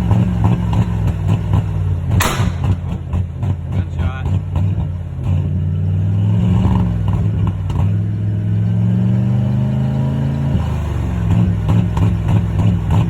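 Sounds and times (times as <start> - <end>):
engine running: 0.0 - 8.6.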